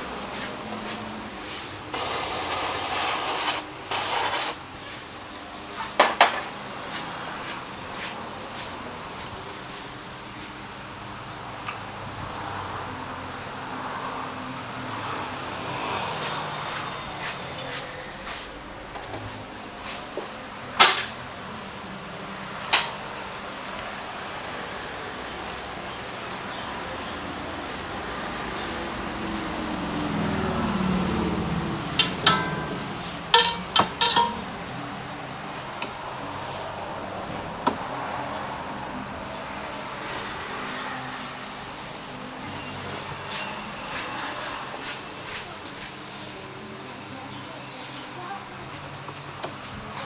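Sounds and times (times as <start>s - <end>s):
hissing spray blasts: 1.9s - 4.6s.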